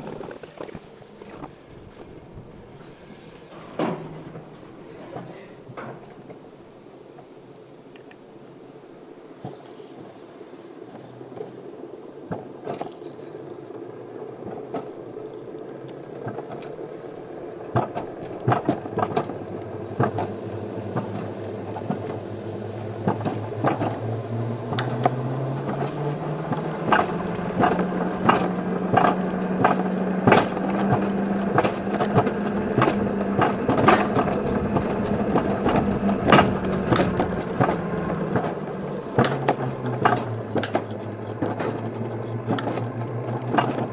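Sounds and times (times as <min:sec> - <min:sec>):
coaster sled rolling hum: 0:00.0 - 0:43.9
sharp clacks on rails: 0:15.9 - 0:43.9.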